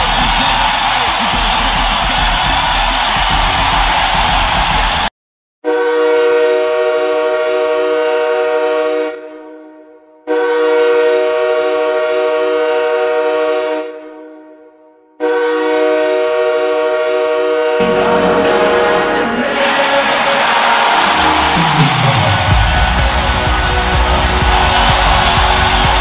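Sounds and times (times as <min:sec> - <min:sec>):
goal song music: 0:00.0 - 0:05.1, 0:17.8 - 0:26.0
goal horn blasts: 0:05.6 - 0:26.0.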